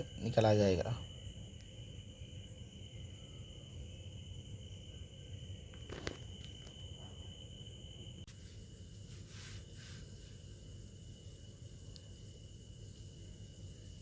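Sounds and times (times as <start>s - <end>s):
background hum: 0.0s - 14.0s
steady high-pitched whine: 0.0s - 14.0s
light click: 11.9s - 12.1s.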